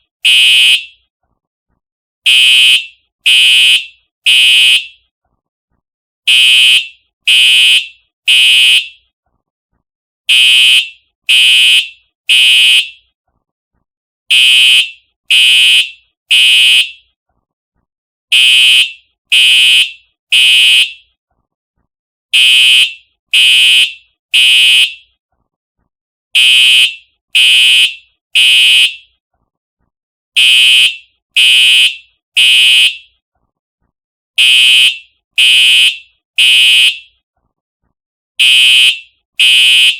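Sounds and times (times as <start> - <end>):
buzzy fire alarm horn blasts: 0.2 - 1.0, 2.3 - 5.0, 6.3 - 9.0, 10.3 - 13.1, 14.3 - 17.1, 18.3 - 21.1, 22.3 - 25.1, 26.4 - 29.1, 30.4 - 33.2, 34.4 - 37.2, 38.4 - 39.9.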